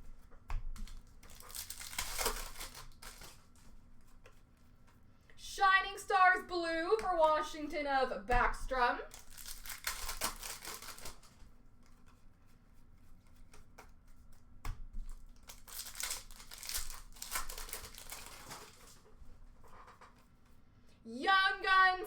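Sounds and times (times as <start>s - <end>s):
plastic wrapper crinkling: 0.8s - 4.2s, 8.7s - 12.1s, 15.0s - 19.1s.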